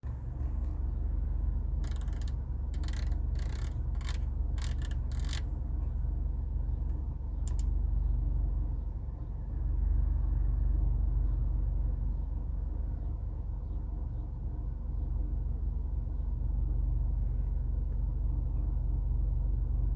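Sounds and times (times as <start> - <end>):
low steady rumble: 0.0 - 19.9.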